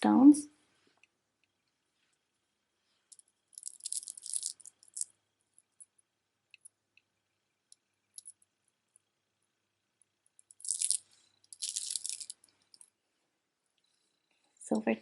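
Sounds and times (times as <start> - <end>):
stones clicking and rattling: 3.1 - 6.8, 7.7 - 8.5, 10.4 - 12.9.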